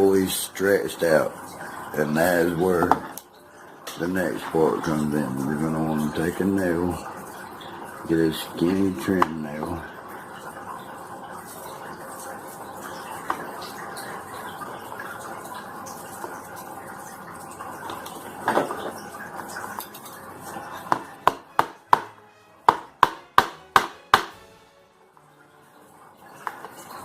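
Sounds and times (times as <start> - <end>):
hammer tapping a nail: 21.3 - 24.4.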